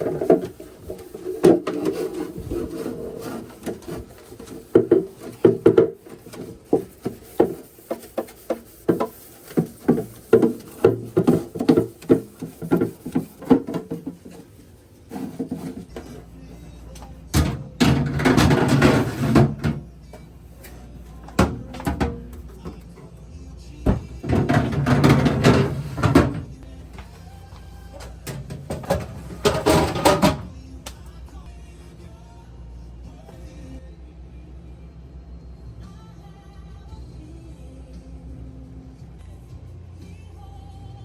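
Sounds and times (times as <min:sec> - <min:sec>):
hard objects knocking and clattering: 0:00.0 - 0:14.5, 0:17.0 - 0:20.3, 0:21.2 - 0:23.2, 0:23.8 - 0:27.2, 0:28.0 - 0:30.5.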